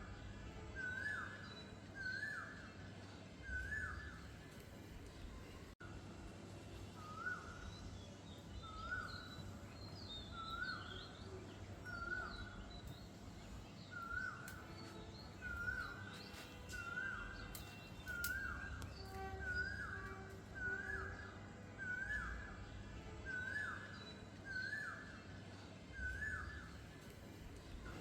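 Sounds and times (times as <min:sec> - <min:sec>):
faint bird chirps: 0:06.9 - 0:28.0.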